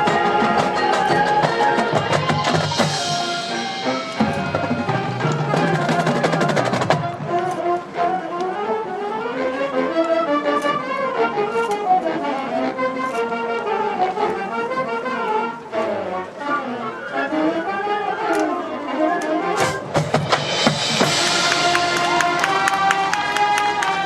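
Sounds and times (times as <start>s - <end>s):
rapid percussion strokes: 0.0s - 7.6s, 19.6s - 24.0s
marching band playing: 0.0s - 24.0s.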